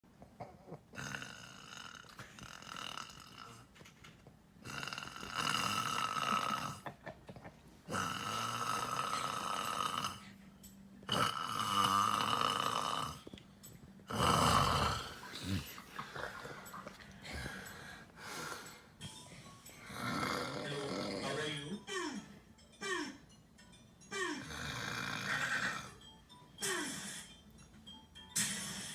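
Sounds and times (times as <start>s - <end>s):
man snoring: 1.0s - 3.7s, 4.6s - 6.9s, 7.9s - 10.4s, 11.1s - 13.3s, 14.1s - 16.6s, 19.8s - 21.6s, 24.4s - 27.2s
quiet breathing: 14.6s - 21.4s.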